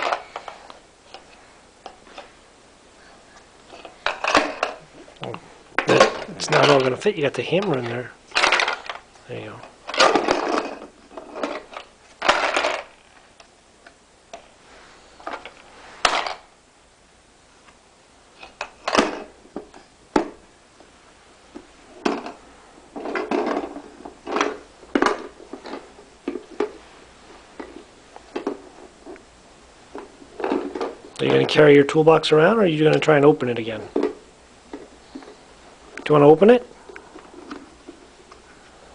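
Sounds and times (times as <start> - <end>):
toy tools knocking and rattling: 4.0 - 4.8, 7.6 - 9.0, 9.8 - 13.0, 18.4 - 20.3, 22.0 - 22.4, 23.0 - 26.8, 30.4 - 31.6.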